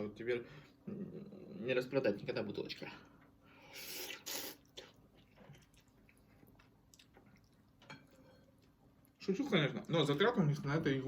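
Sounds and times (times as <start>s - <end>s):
wet noisy eating: 3.7s - 10.2s
faint chewing clicks: 4.6s - 9.2s.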